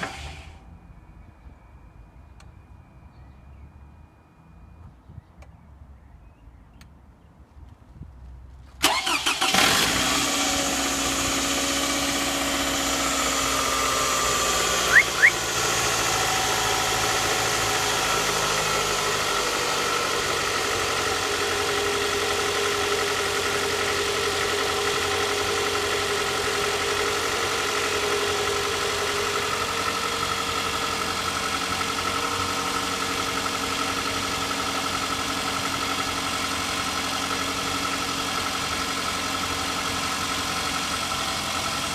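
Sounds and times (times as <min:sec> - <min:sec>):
car engine starting and idling: 0:00.0 - 0:01.8, 0:08.5 - 0:41.9
short high chirps: 0:14.9 - 0:15.4.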